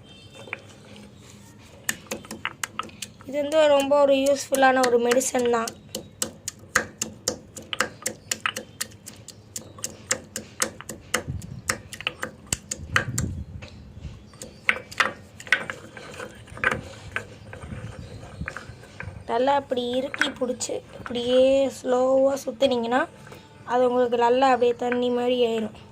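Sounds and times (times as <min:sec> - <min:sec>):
dull thumps: 0:01.8 - 0:13.4
stone pestle knocking in grinder: 0:01.9 - 0:13.3.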